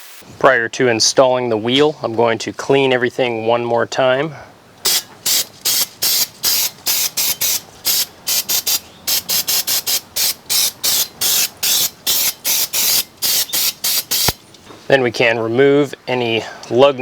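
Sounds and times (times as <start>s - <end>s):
aerosol spray hissing squirts: 4.9s - 14.4s.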